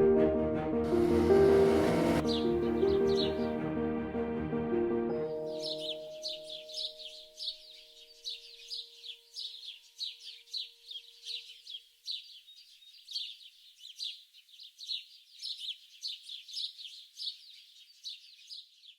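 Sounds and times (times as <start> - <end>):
held low tones: 0.9 - 3.6
songbirds chirping: 5.2 - 18.9.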